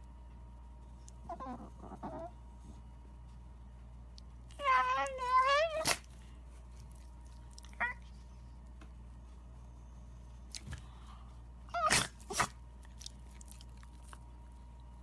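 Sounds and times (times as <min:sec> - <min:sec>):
dog crying: 0:01.2 - 0:02.4, 0:04.5 - 0:06.1, 0:11.7 - 0:12.5.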